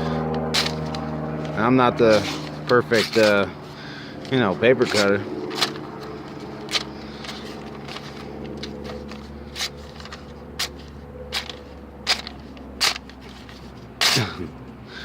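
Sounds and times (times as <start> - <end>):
steady low hum: 0.0 - 15.0
knife slicing paper: 6.6 - 14.4.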